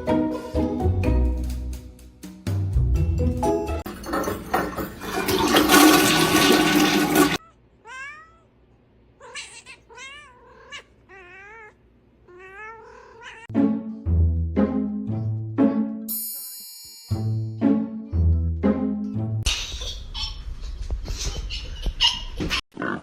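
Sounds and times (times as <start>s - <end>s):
toilet flushing: 3.8s - 7.4s
cat meowing: 7.4s - 8.5s, 9.2s - 13.5s.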